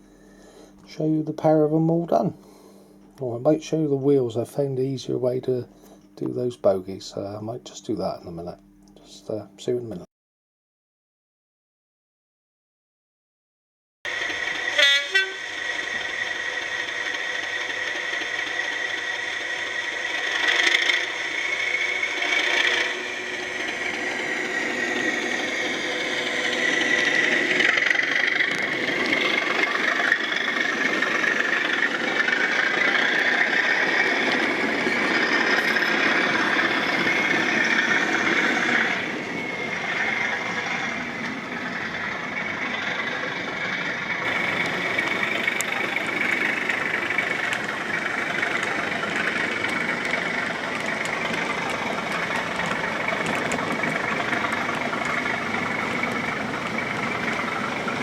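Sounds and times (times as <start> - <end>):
model locomotive engine running: 0.0 - 10.1, 14.1 - 58.0
horn toots: 14.6 - 15.6.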